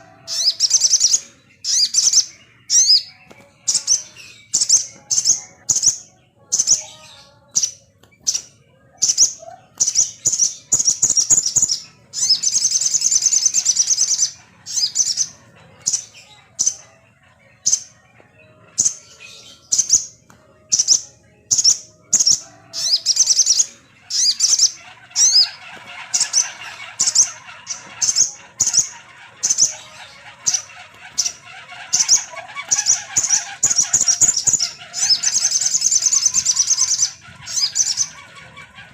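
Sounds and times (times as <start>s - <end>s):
low chattering: 0.0s - 38.9s
jay rattling calls: 23.5s - 38.9s.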